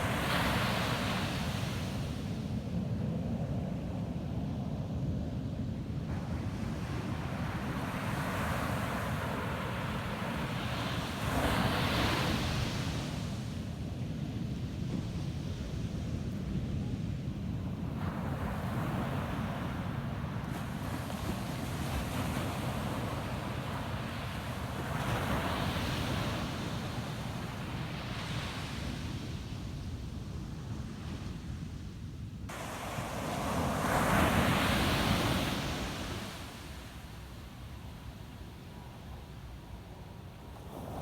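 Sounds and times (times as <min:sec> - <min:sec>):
ocean waves breaking on beach: 0:00.0 - 0:04.5, 0:05.6 - 0:30.0, 0:32.5 - 0:41.0.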